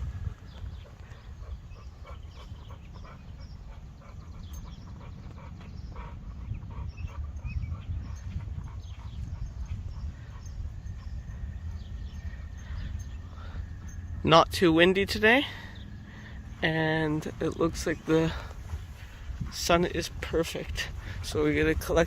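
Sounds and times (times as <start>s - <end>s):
steady low rumble: 0.0s - 22.0s
dog sniffing and snuffling: 0.2s - 14.2s.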